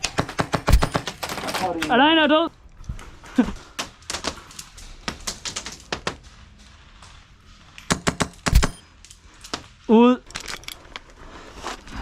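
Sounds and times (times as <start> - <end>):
airsoft guns firing: 0.0 - 2.1, 7.9 - 8.8.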